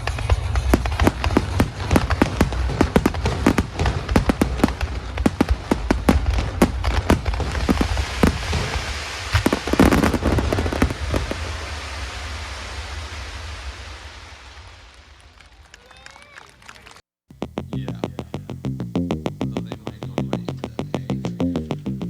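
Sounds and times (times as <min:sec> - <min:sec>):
fireworks bangs: 0:00.0 - 0:15.6
fireworks crackling: 0:00.0 - 0:16.2
hiss: 0:07.7 - 0:15.0.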